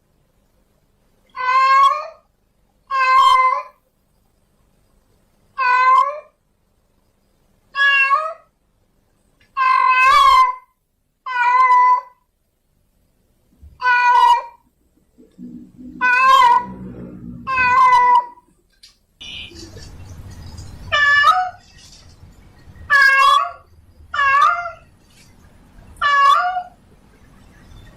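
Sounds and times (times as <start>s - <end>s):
cat meowing loudly: 2.9s - 3.8s, 5.6s - 6.4s, 7.8s - 8.5s, 9.6s - 10.6s, 11.2s - 12.2s, 13.8s - 14.6s, 16.0s - 16.7s, 17.4s - 18.4s, 20.9s - 21.6s, 22.9s - 24.9s, 26.0s - 26.8s
faint low rumble: 14.6s - 21.0s.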